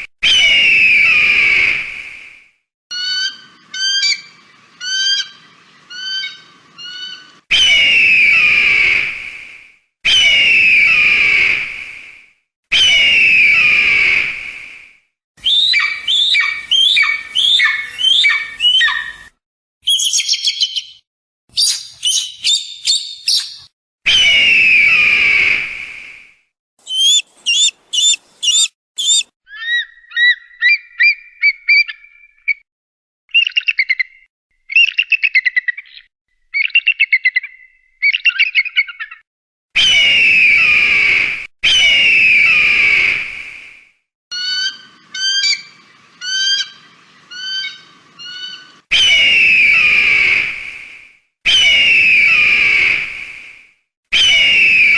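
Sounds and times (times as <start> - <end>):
eagle screams: 12.7 - 14.3, 15.4 - 19.2, 26.8 - 30.3, 54.2 - 54.9
eagle chirping whistles: 15.4 - 25.6, 26.8 - 32.6
eagle chattering trills: 26.8 - 29.3.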